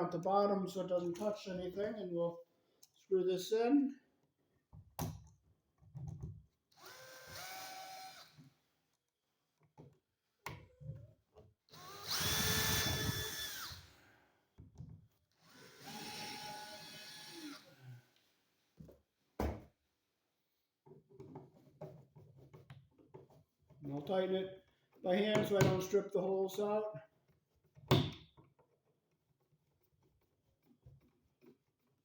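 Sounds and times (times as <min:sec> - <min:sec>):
cordless drill motor whine: 0:06.8 - 0:08.4, 0:11.7 - 0:14.0, 0:15.4 - 0:18.0
drill clicks: 0:06.8 - 0:08.4, 0:11.7 - 0:13.9, 0:15.4 - 0:17.8.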